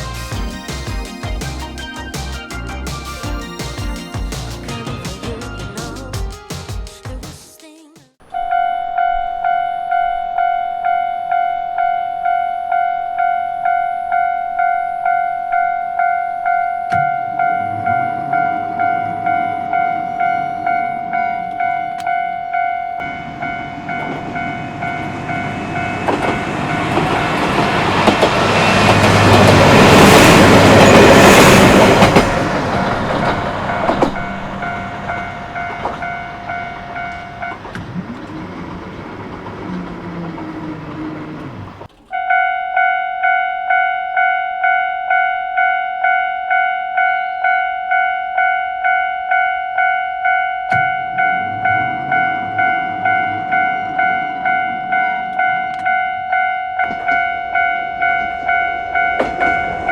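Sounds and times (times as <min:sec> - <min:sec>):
diesel railcar passing: 0:00.0 - 0:06.2, 0:08.2 - 0:59.9
level-crossing bell ringing: 0:08.3 - 0:37.6, 0:42.1 - 0:59.9.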